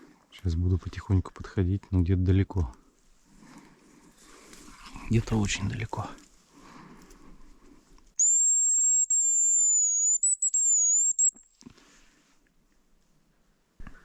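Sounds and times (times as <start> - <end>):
high thin decoy whistle: 8.2 - 11.5.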